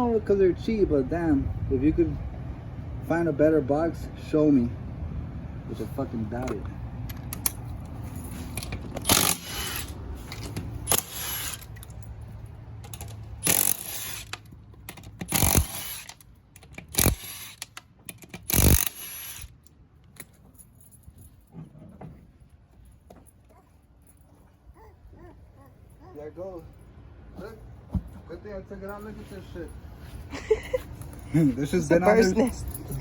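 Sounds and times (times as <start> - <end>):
metal tools clanking: 6.3 - 19.0, 31.0 - 33.0.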